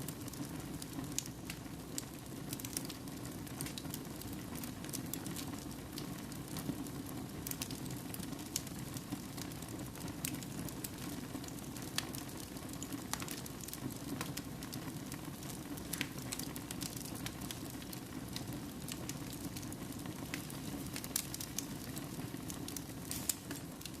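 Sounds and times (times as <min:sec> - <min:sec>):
firewood crackling and popping: 0:00.0 - 0:24.0.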